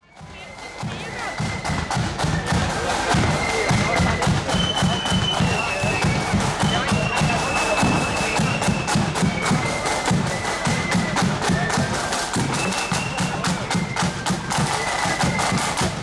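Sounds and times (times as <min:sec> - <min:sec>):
marching band playing: 0:00.0 - 0:16.0
snare drum beats and rolls: 0:00.0 - 0:16.0.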